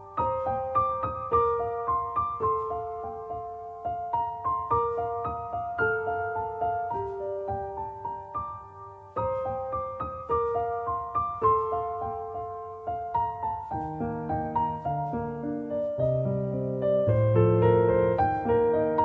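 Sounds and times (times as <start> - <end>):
soft slow piano music: 0.0 - 19.0.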